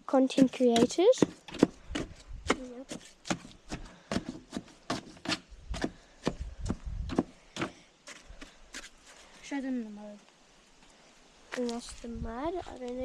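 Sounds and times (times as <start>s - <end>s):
digging tool chopping wet soil: 0.2s - 7.8s.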